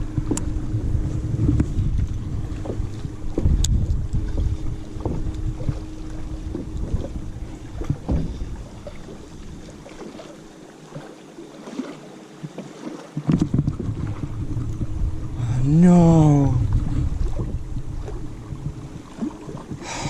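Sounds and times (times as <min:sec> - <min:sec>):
low rumble: 0:00.0 - 0:09.7, 0:13.5 - 0:19.2
wind buffeting microphone: 0:00.0 - 0:10.0, 0:13.2 - 0:20.0.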